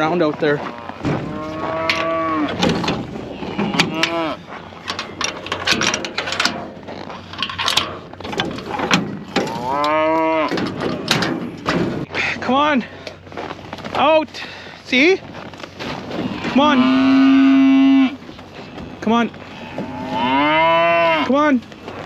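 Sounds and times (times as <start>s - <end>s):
cattle mooing: 0.6s - 5.9s, 9.3s - 10.9s, 16.2s - 21.4s
metallic clanks and rattles: 1.0s - 12.2s.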